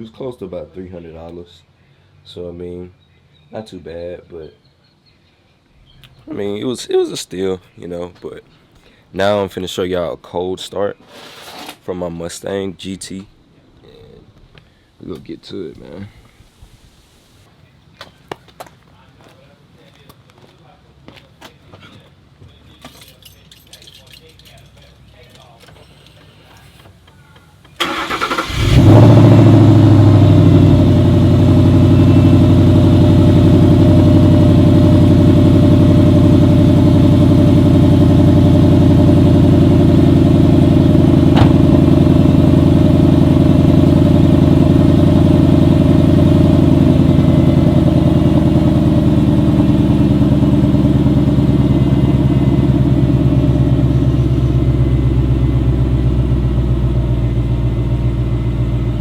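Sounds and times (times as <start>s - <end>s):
car engine starting and idling: 27.5s - 59.0s.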